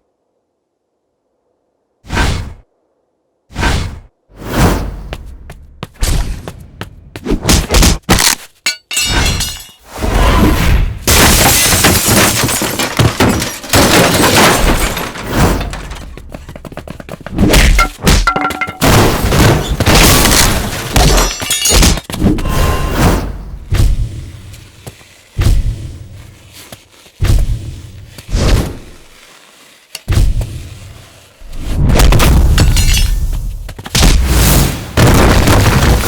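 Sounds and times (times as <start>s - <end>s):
sharp hits and crashes: 5.9s - 16.5s, 17.3s - 24.5s.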